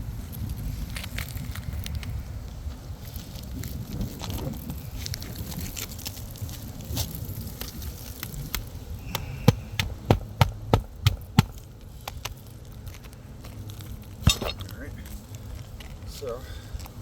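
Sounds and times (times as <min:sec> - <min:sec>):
shingles crackling and rustling: 0:00.0 - 0:17.0.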